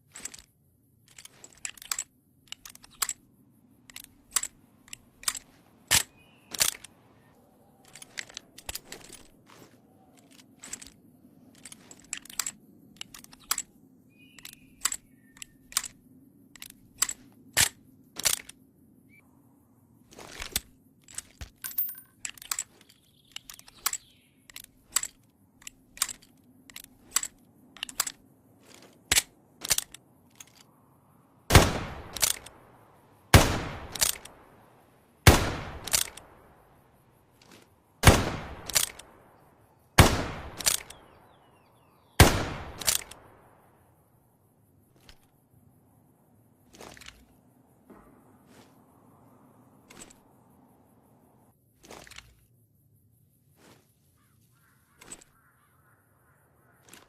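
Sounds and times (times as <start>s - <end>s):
revolver clicks and snaps: 1.1s - 18.6s, 20.3s - 30.7s, 31.5s - 32.6s, 33.4s - 34.6s, 35.3s - 36.6s, 37.4s - 39.4s, 40.0s - 41.5s, 42.2s - 43.5s
loud gunshots ringing: 42.2s - 43.0s.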